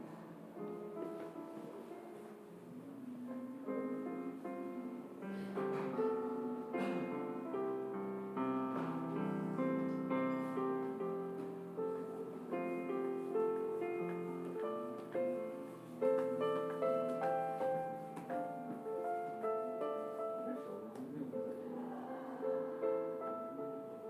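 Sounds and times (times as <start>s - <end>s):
piano music: 0.0s - 24.0s.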